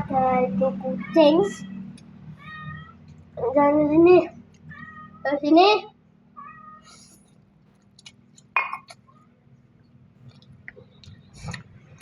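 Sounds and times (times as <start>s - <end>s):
quiet chewing: 6.9s - 9.1s, 9.8s - 12.0s.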